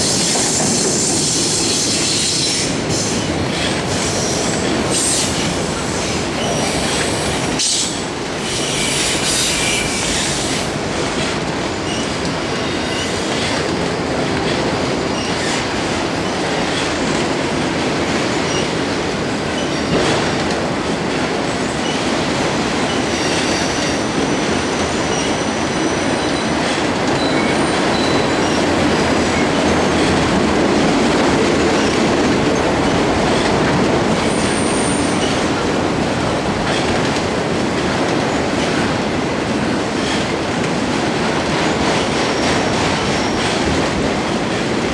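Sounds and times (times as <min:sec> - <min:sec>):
wheel squeals: 0:00.0 - 0:10.7, 0:22.9 - 0:30.2, 0:34.2 - 0:35.5, 0:41.7 - 0:43.8
train wheels rumbling over rails: 0:00.0 - 0:44.9.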